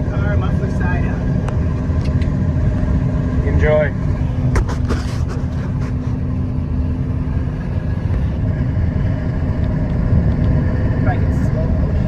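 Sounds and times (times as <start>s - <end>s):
combine harvester low rumble: 0.0s - 12.0s
steady hum: 4.1s - 8.0s.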